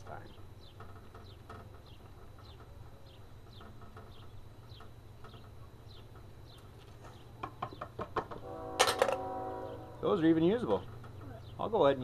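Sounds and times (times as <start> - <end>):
faint bird chirping: 0.0 - 8.0, 9.4 - 12.0
low steady hum: 0.0 - 12.0.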